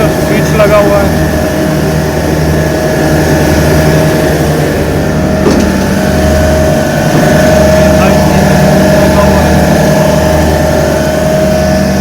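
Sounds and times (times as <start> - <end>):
chiller machine drone: 0.0 - 12.0
steady whine: 0.0 - 12.0
brief knock: 5.4 - 5.8.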